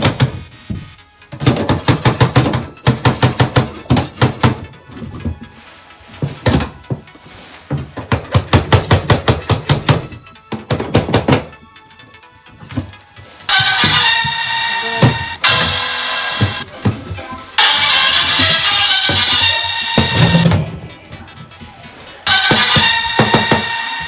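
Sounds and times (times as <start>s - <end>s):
packing tape tearing and peeling: 3.3s - 10.0s, 21.4s - 23.1s.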